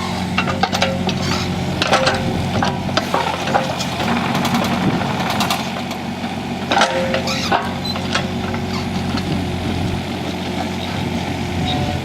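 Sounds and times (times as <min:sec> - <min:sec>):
heavy machinery engine running: 0:00.0 - 0:12.0
concrete knocking and clanking: 0:01.8 - 0:06.0, 0:06.6 - 0:09.3.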